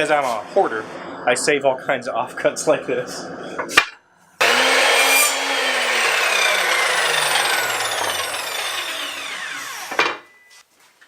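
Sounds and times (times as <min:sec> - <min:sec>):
saw whine spinning down: 0:04.4 - 0:10.2.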